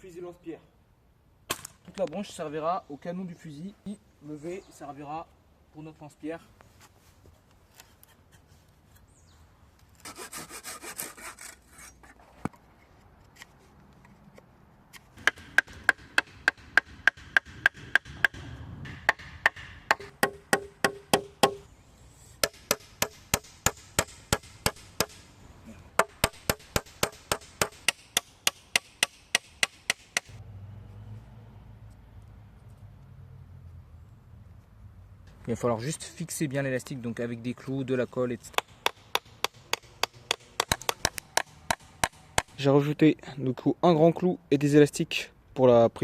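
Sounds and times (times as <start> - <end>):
hand tool rubbing wood: 10.0 - 12.3.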